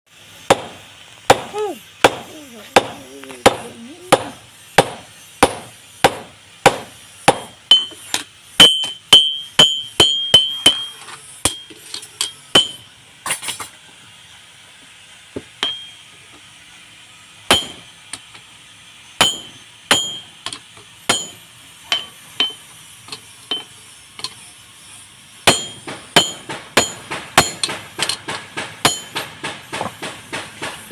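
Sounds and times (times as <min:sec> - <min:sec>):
hammer striking steel: 0:00.5 - 0:12.9, 0:15.6 - 0:15.9, 0:17.5 - 0:17.9, 0:19.2 - 0:22.6, 0:25.4 - 0:30.9.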